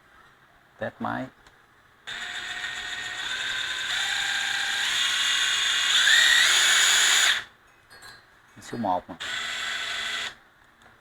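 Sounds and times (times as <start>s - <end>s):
cordless driver motor whine: 2.1s - 7.5s, 9.2s - 10.4s.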